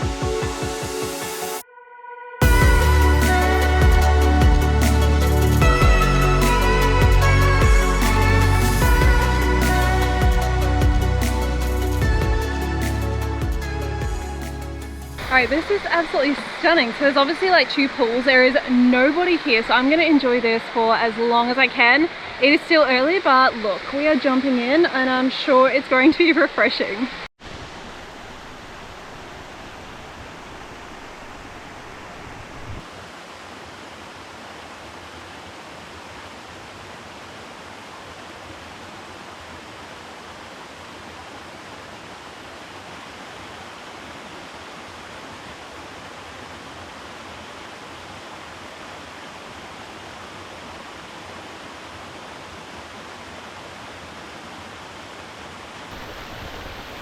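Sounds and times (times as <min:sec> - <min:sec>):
waterfall rushing: 0:02.4 - 0:24.5, 0:27.4 - 0:37.5, 0:55.8 - 0:57.0.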